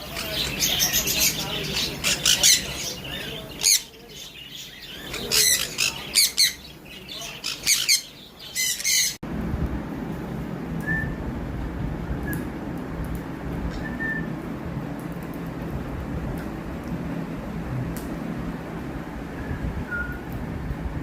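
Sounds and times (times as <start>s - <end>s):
parrots squawking: 0.0s - 9.2s
steady low hum: 0.0s - 21.0s.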